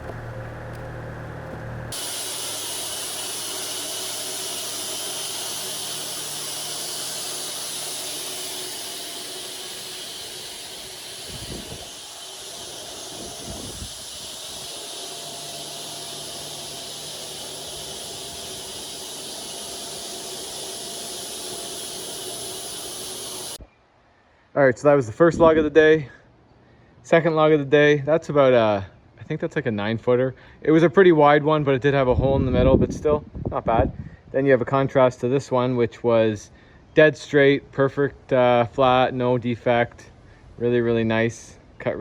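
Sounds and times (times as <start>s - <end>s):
bandsaw sawmill hissing: 0.0s - 23.6s
low hum: 0.0s - 23.6s.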